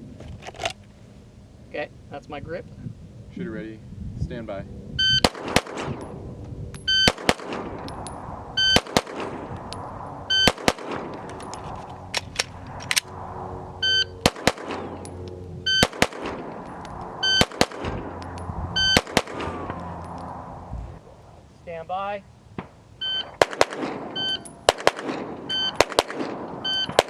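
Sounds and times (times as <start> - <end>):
shot timer beeps: 5.0 - 5.2, 6.8 - 7.2, 8.6 - 8.8, 13.8 - 14.2, 15.7 - 15.9, 17.2 - 17.5, 18.8 - 19.0, 23.0 - 23.4, 24.2 - 24.5, 25.5 - 25.8, 26.6 - 27.0
pistol shots with echo: 5.2 - 6.0, 7.0 - 7.8, 8.7 - 9.5, 10.4 - 11.1, 14.2 - 15.0, 15.8 - 16.5, 17.4 - 18.0, 18.9 - 19.5, 23.3 - 27.0.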